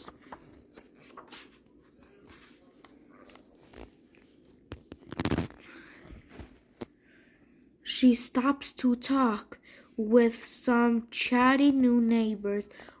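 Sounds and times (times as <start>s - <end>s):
paper book rustling: 0.0s - 5.6s
soft clicks of book handling: 0.0s - 5.6s.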